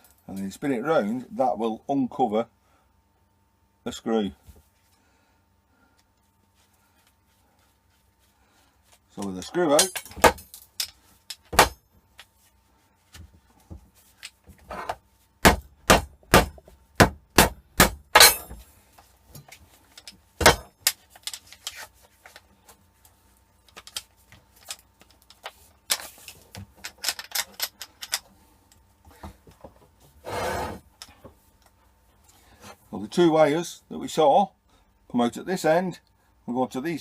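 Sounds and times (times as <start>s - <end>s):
tools striking a hard surface: 9.4s - 11.8s, 15.4s - 18.6s.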